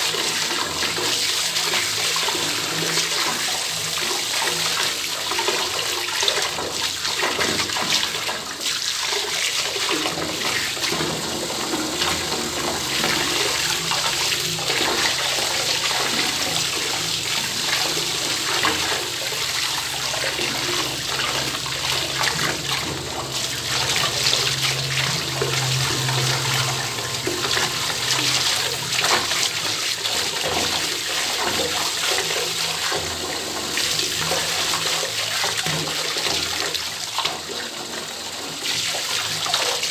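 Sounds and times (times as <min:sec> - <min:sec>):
water pouring into bathtub: 0:00.1 - 0:37.3
low hum: 0:10.4 - 0:31.6.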